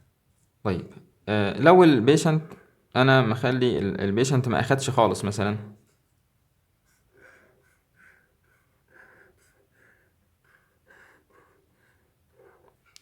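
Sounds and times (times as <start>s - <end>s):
pen strokes on paper: 5.8s - 13.0s.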